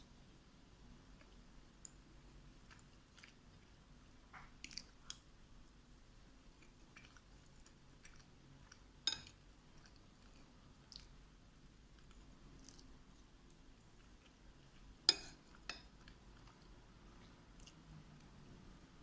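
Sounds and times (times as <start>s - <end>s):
chewing and mouth sounds: 1.1s - 5.3s, 6.5s - 11.2s, 11.9s - 18.4s.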